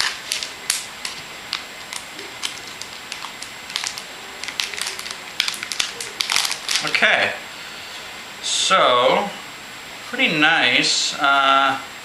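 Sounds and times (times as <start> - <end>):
plastic card pack crinkling: 0.0 - 7.2.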